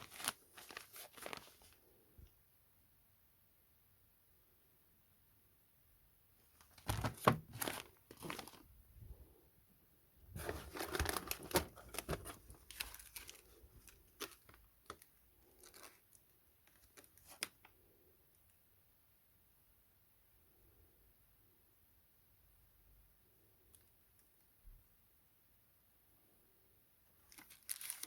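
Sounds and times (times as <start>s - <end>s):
packaging torn and crumpled: 0.0s - 1.7s, 10.4s - 17.6s, 27.3s - 28.0s.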